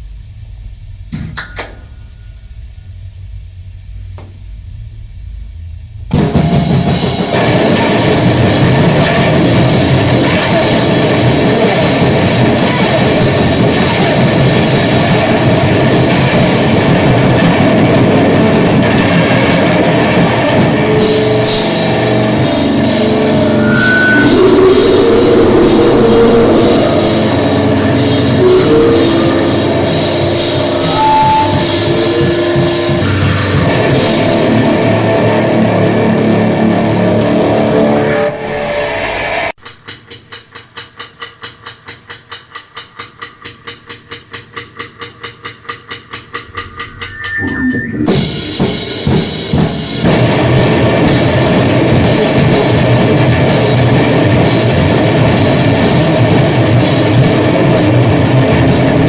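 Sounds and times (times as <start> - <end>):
low rumble: 0.0 - 6.2, 13.6 - 38.6
distorted noise music with drums: 0.0 - 59.0.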